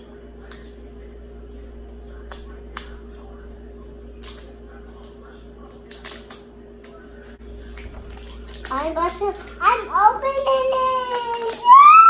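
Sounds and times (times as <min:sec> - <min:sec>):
steady low hum: 0:00.0 - 0:11.4
plastic packaging clicks and crackles: 0:07.8 - 0:11.7.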